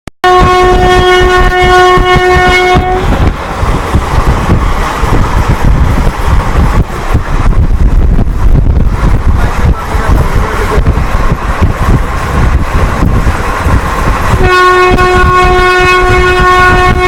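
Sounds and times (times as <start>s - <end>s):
twin-tone locomotive horn: 0.2s - 3.3s, 14.3s - 17.0s
train rushing past: 0.3s - 17.0s.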